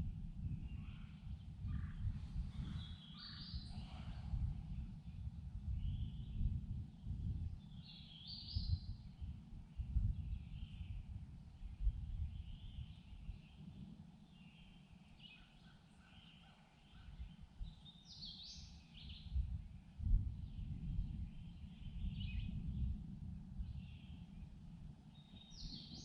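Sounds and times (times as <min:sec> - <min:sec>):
uneven low rumbling: 0:00.0 - 0:07.6
songbirds chirping: 0:00.6 - 0:26.0.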